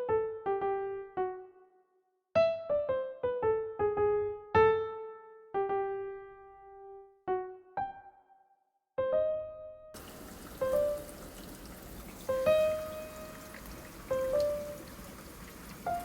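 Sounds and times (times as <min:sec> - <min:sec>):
slow solo piano: 0:00.0 - 0:01.7, 0:02.4 - 0:16.0
rain hissing: 0:10.0 - 0:16.0.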